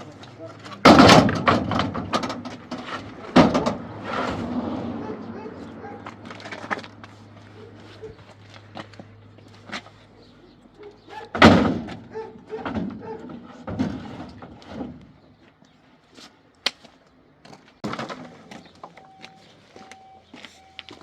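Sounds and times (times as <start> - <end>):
heavy thuds and scrapes: 0.9 - 5.0, 12.6 - 15.2.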